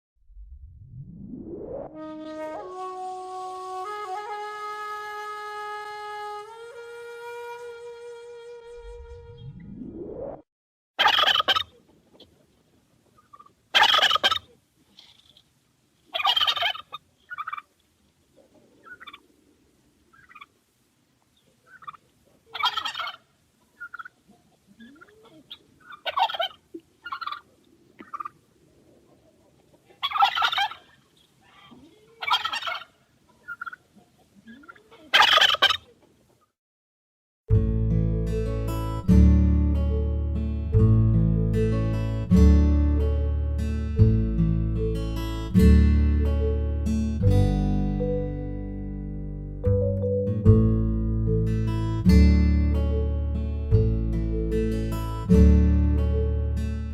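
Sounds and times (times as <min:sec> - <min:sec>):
turkey gobbling: 0:11.0 - 0:12.3, 0:13.2 - 0:14.6, 0:16.1 - 0:17.7, 0:18.4 - 0:19.3, 0:20.1 - 0:20.5, 0:21.4 - 0:36.0.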